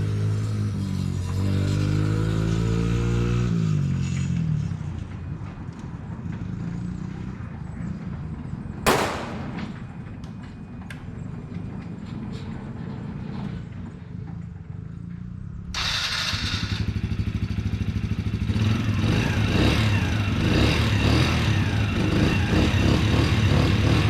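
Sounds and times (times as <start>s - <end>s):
loud sharp bang: 8.9s - 10.1s.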